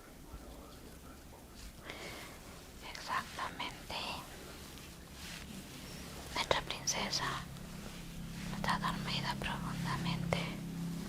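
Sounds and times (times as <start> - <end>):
faint soft hiss: 0.0 - 11.0
person whispering: 2.8 - 4.6, 6.3 - 7.5, 8.5 - 10.6.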